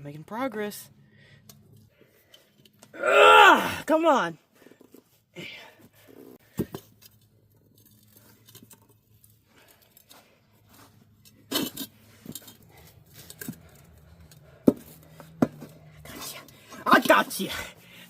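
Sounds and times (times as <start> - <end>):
tools clicking and knocking on rim: 11.2 - 16.6.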